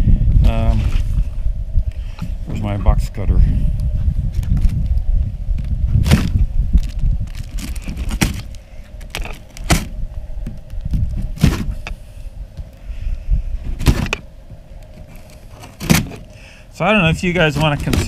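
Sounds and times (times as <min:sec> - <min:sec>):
low steady rumble: 0:00.0 - 0:18.0
cardboard box knocks and rips: 0:06.0 - 0:06.4, 0:11.4 - 0:11.8, 0:13.8 - 0:14.2.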